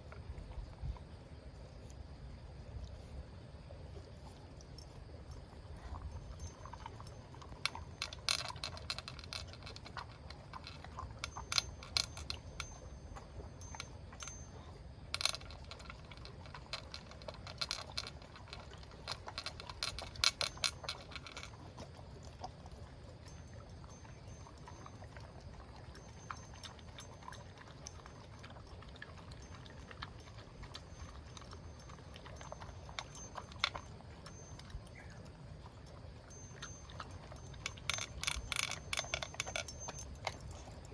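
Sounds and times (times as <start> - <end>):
small pet crunching food: 5.6 - 22.6.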